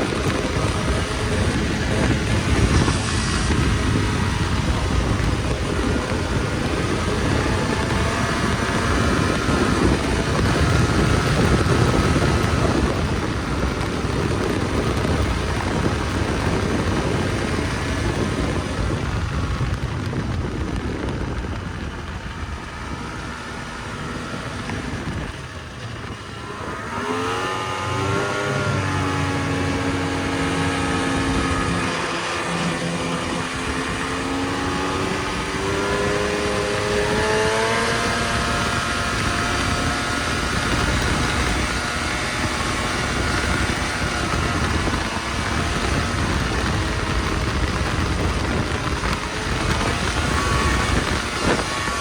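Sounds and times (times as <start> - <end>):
rushing noise: 0.0 - 52.0
snowmobile engine running: 0.0 - 52.0.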